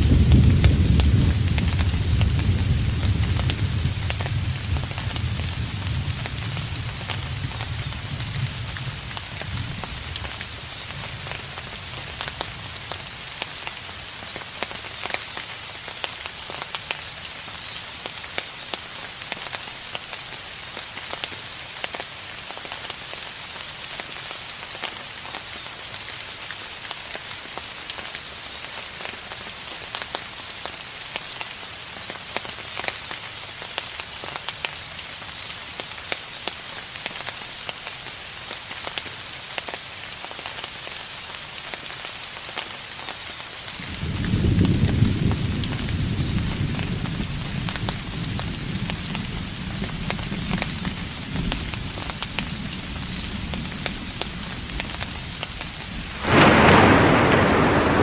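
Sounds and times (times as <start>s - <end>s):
distant thunder rumble: 0.0s - 10.1s, 43.8s - 58.0s
steady rain falling: 0.0s - 58.0s.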